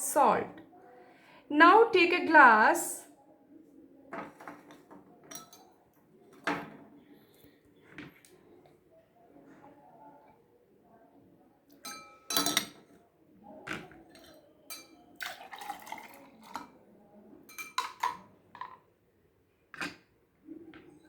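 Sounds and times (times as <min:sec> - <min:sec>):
glassware clinking: 0:04.3 - 0:05.8, 0:11.8 - 0:12.9, 0:14.1 - 0:16.7, 0:17.5 - 0:18.8.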